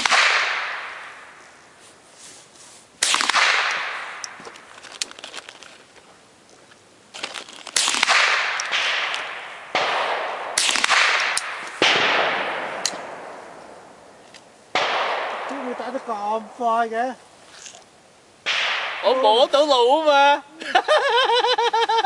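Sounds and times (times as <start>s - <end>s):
rifle shots echoing: 0.0s - 1.6s, 3.0s - 4.8s, 7.7s - 17.1s, 18.4s - 19.5s.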